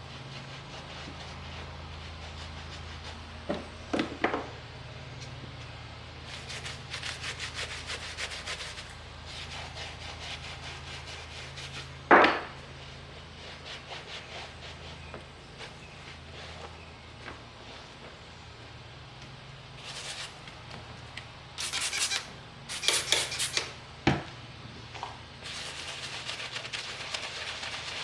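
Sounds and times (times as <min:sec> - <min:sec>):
rubbing on leather glove: 0:00.1 - 0:03.4, 0:06.3 - 0:12.0, 0:12.8 - 0:16.7, 0:21.6 - 0:23.6, 0:25.4 - 0:28.0.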